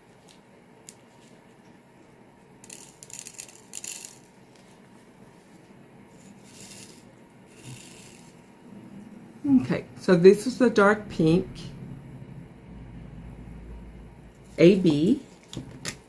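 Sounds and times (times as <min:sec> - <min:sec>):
resin beads clicking and rattling: 0:02.6 - 0:04.4, 0:06.2 - 0:08.4.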